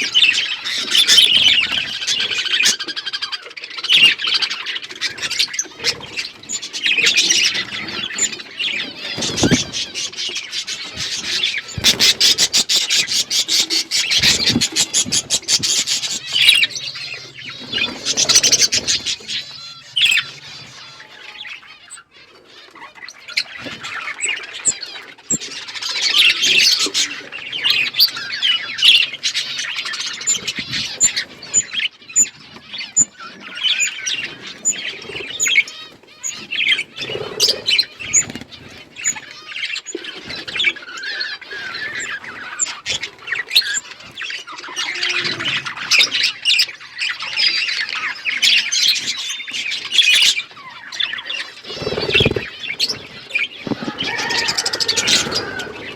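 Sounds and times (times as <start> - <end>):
budgerigars chattering and chirping: 0.0 - 55.9
sharp bird squawks: 51.6 - 52.6.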